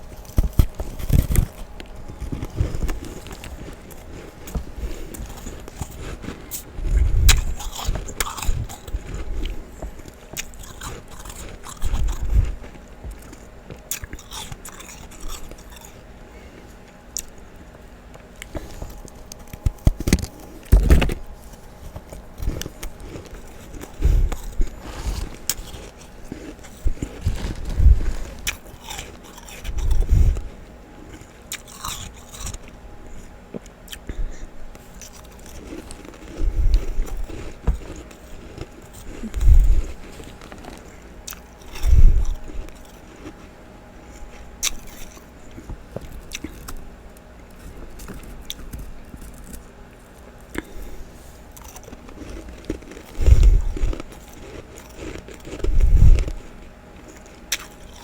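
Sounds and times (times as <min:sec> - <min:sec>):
person crunching ice: 0:00.2 - 0:09.6, 0:10.3 - 0:16.0, 0:18.4 - 0:30.5, 0:31.5 - 0:32.7, 0:35.0 - 0:43.4, 0:51.6 - 0:56.5.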